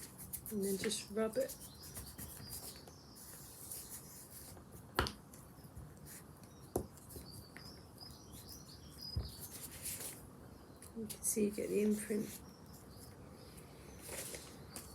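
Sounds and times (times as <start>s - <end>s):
birds chirping faintly: 0.0s - 14.9s.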